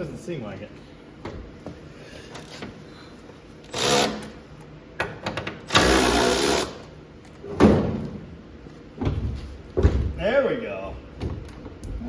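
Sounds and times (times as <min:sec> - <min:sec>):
cordless power tool buzzing: 0:03.7 - 0:04.4.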